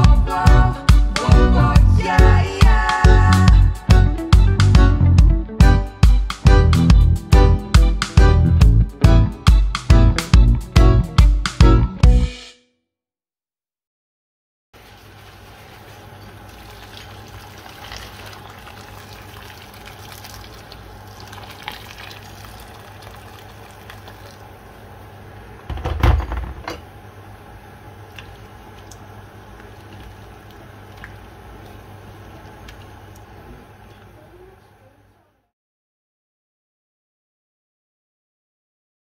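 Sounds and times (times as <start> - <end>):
liquid bubbling in a pot: 14.8 - 25.7, 26.3 - 34.2.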